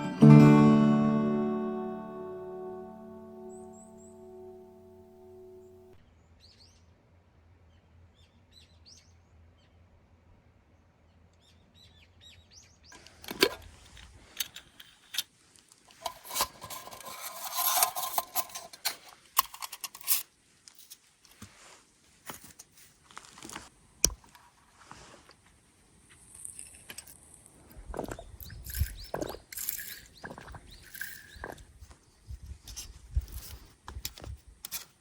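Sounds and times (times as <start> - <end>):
rustling and scraping: 13.0 - 25.6, 27.9 - 35.0
faint birds chirping: 27.9 - 33.0.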